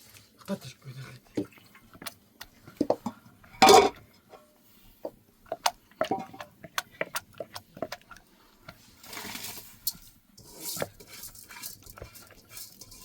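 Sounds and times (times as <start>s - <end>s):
dishes and utensils clinking: 2.9s - 4.0s, 6.0s - 6.5s, 9.9s - 13.0s.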